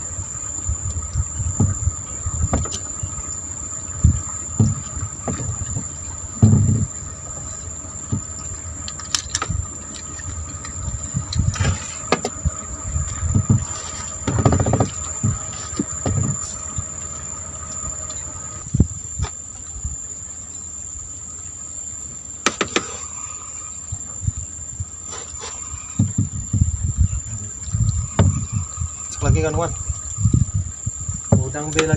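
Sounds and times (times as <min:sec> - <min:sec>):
low thumps and knocks: 0:00.0 - 0:17.2, 0:25.9 - 0:31.9
high-pitched insect chorus: 0:00.0 - 0:31.9.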